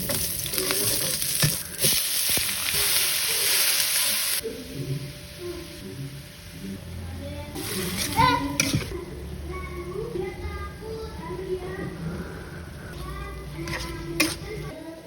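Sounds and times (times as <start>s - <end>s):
food sizzling in hot oil: 0.0s - 4.4s.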